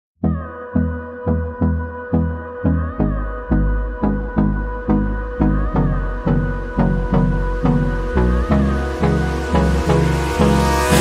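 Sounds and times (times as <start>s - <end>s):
electronic pop music: 0.2s - 11.0s.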